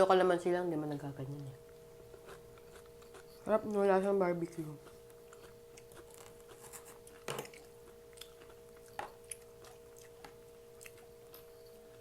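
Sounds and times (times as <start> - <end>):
faint hum: 0.0 - 12.0
person chewing food: 1.6 - 3.8, 4.5 - 12.0.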